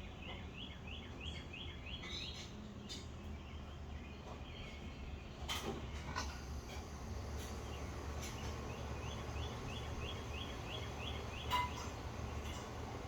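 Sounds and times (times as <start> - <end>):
bird chirping: 7.6 - 12.5.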